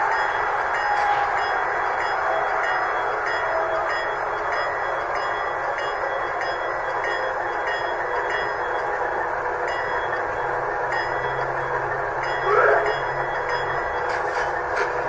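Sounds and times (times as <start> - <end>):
diesel engine sound through small speaker: 11.5 - 15.0.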